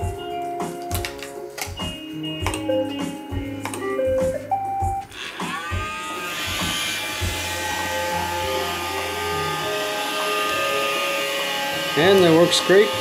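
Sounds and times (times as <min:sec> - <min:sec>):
robot vacuum motor whirring: 0:05.0 - 0:13.0.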